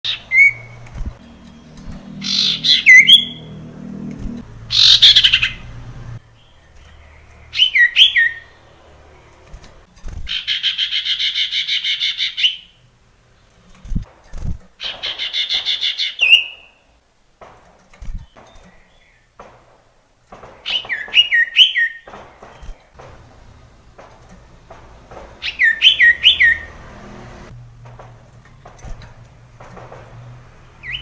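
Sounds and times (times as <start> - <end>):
bird harsh calls: 0.0 - 3.7, 4.7 - 9.6, 10.2 - 12.9, 14.1 - 17.0, 18.1 - 23.2, 24.7 - 27.5, 30.7 - 31.0
bird chattering trill: 1.4 - 3.4, 4.7 - 5.7, 14.8 - 16.9, 25.4 - 26.7.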